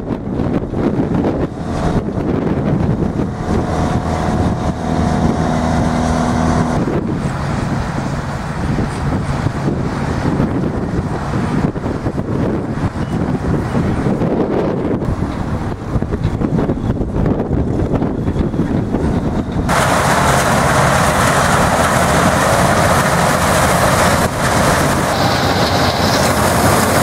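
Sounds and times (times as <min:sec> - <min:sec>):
farm machine engine running: 0:00.0 - 0:27.0
wind buffeting microphone: 0:00.0 - 0:27.0.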